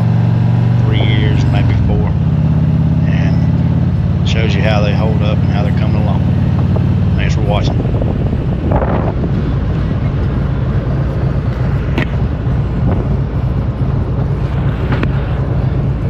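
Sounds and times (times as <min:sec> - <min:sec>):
motorcycle engine running: 0:00.0 - 0:16.0
wind noise on microphone: 0:06.2 - 0:16.0.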